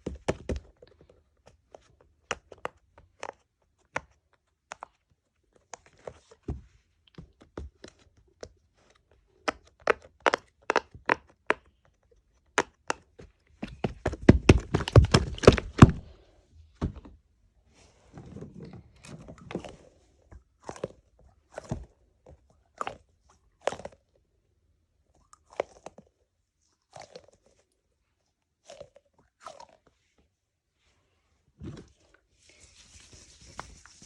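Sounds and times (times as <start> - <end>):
soft rustle: 30.1 - 34.0.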